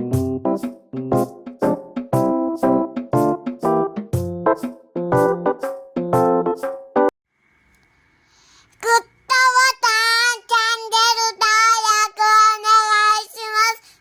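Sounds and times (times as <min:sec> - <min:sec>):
child singing: 0:08.8 - 0:14.0.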